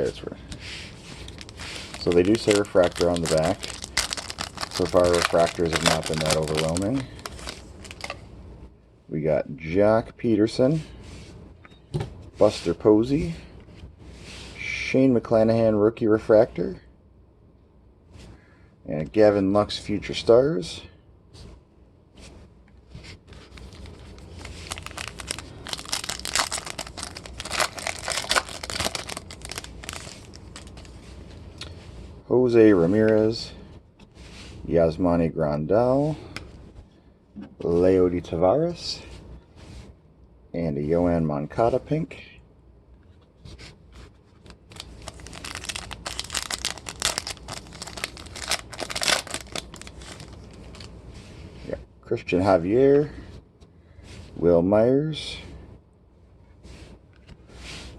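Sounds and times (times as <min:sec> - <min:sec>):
foil wrapper tearing and crinkling: 0:01.2 - 0:08.2, 0:23.6 - 0:30.9, 0:44.4 - 0:50.9.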